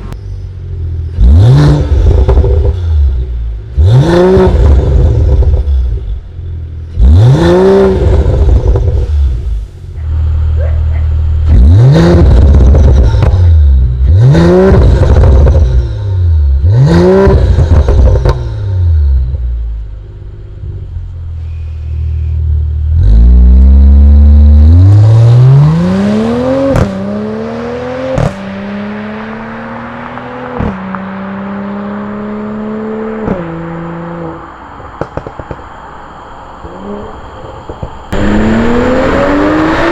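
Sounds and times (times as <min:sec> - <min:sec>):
car engine revving: 0:00.0 - 0:20.5, 0:22.6 - 0:39.9
exhaust cracks: 0:34.7 - 0:39.4.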